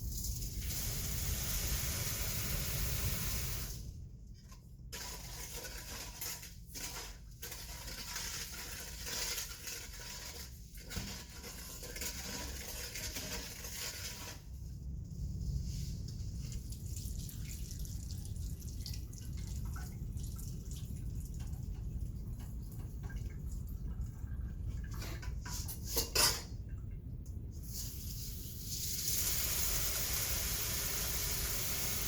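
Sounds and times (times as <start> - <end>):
water running and splashing at sink: 0.4 - 3.7, 28.6 - 32.0.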